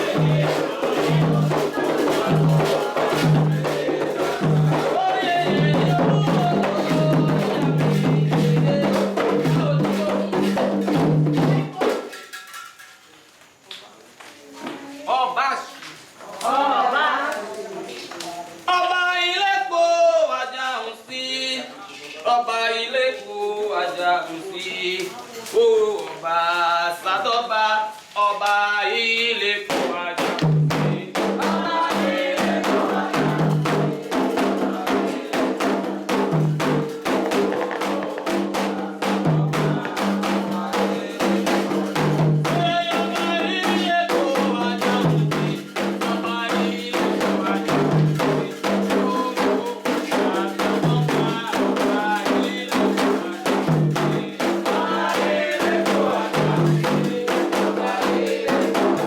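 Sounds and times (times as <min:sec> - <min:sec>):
person singing: 0:00.0 - 0:12.2, 0:18.7 - 0:59.0
hand drums and percussion: 0:00.0 - 0:13.1, 0:28.5 - 0:59.0.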